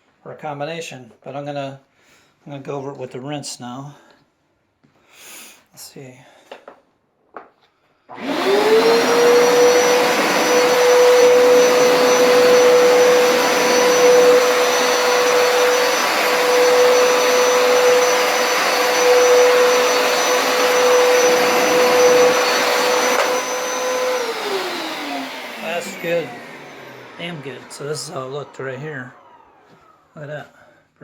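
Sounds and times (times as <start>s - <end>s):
loud suction noise: 8.1s - 29.7s
carpet cleaner motor whining: 8.1s - 30.2s.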